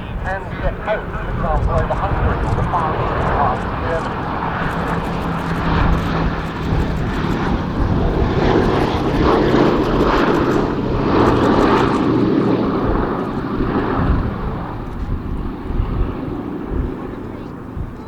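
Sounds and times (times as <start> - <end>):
propeller plane engines droning: 0.0 - 18.0.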